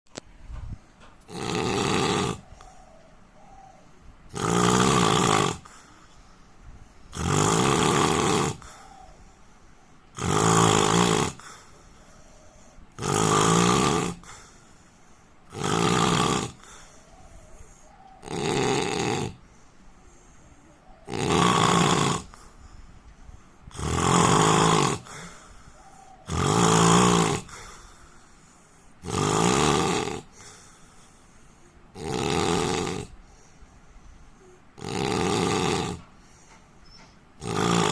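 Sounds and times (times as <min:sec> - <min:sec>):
man snoring: 0:01.3 - 0:02.5, 0:04.3 - 0:05.8, 0:07.1 - 0:08.8, 0:10.2 - 0:11.7, 0:13.0 - 0:14.5, 0:15.5 - 0:16.7, 0:18.2 - 0:19.4, 0:21.0 - 0:22.4, 0:23.7 - 0:25.4, 0:26.2 - 0:27.8, 0:29.0 - 0:30.4, 0:31.9 - 0:33.2, 0:34.4 - 0:36.0, 0:37.4 - 0:37.9.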